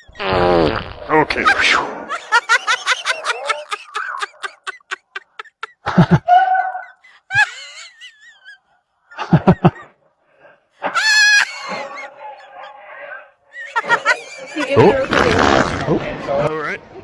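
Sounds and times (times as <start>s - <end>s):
fake fart sounds: 0.1s - 2.0s, 14.8s - 16.2s.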